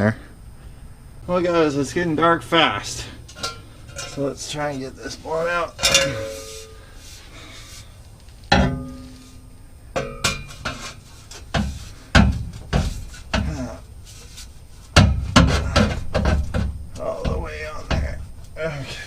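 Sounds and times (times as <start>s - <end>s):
metallic clanks and knocks: 3.3s - 4.2s, 5.8s - 6.8s, 8.5s - 9.3s, 10.0s - 13.6s.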